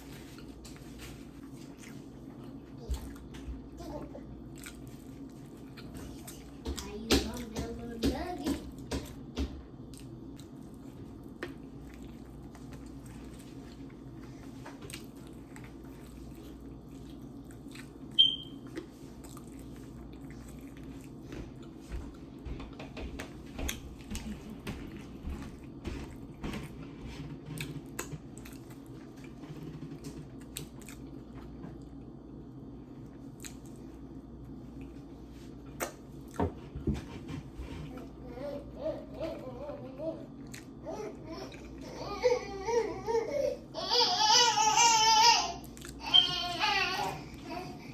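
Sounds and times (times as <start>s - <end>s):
chewing food: 0.0s - 7.8s, 9.8s - 22.4s, 23.1s - 32.2s, 32.9s - 35.0s, 40.3s - 40.8s
low background hum: 0.0s - 47.9s
sharp high-pitched squeak: 18.2s - 18.5s.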